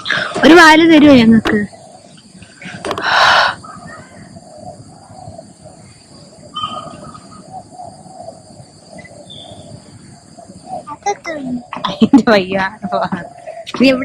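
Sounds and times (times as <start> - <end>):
bird harsh cry: 6.5 - 8.3.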